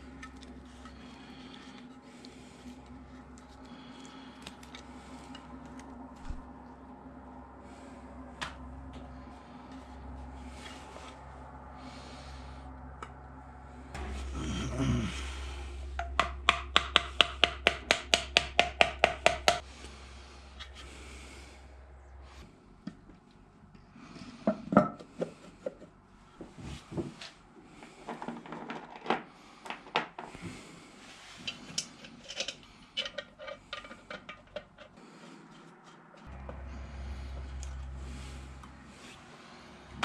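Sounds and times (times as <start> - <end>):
tools knocking and scraping: 31.4 - 35.0.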